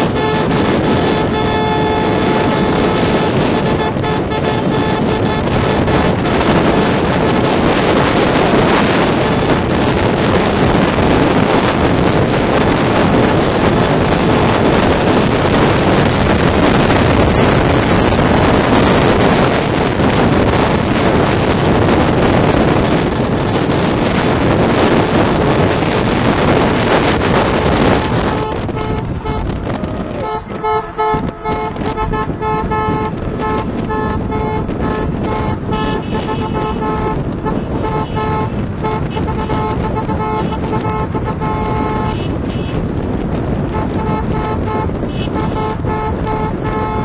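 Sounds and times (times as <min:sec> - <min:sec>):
car road noise: 0:00.0 - 0:47.0
wind buffeting microphone: 0:00.0 - 0:47.0.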